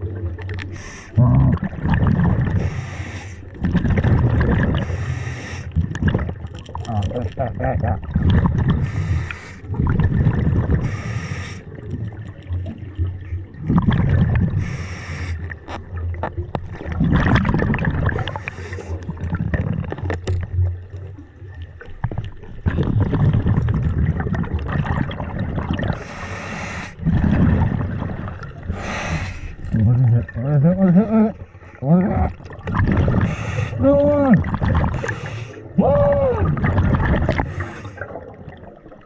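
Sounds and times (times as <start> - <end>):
exhaled bubbles rumbling: 0.0 - 39.0
regulator inhale hiss: 0.7 - 1.2, 2.6 - 3.5, 4.8 - 5.7, 8.8 - 9.7, 10.8 - 11.7, 14.6 - 15.5, 26.0 - 27.0, 28.7 - 29.6, 35.0 - 35.6, 37.4 - 38.0.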